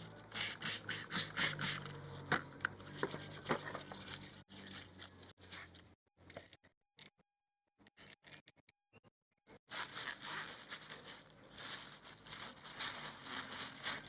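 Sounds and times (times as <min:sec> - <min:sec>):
plastic bag crinkling: 0:09.7 - 0:14.0.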